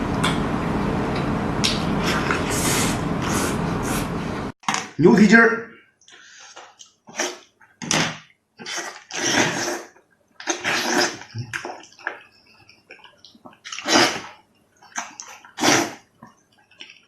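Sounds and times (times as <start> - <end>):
person slurping and eating: 2.0 - 4.0, 7.1 - 7.5, 8.6 - 12.2, 13.7 - 14.4, 15.0 - 16.1.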